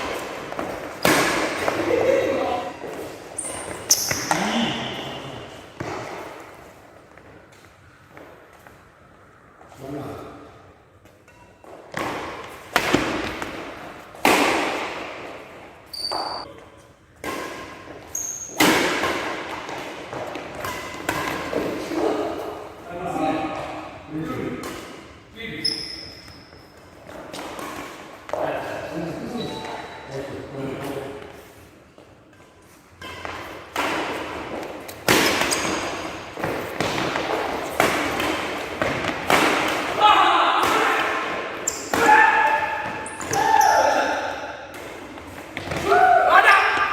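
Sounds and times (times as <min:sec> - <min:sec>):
shoe squeaks: 0:03.2 - 0:05.4, 0:15.9 - 0:16.6, 0:18.1 - 0:18.6, 0:25.5 - 0:26.8, 0:29.3 - 0:30.3, 0:35.3 - 0:36.1, 0:41.6 - 0:41.9, 0:43.0 - 0:44.2
racket striking shuttlecock: 0:11.2 - 0:15.4, 0:32.9 - 0:43.4.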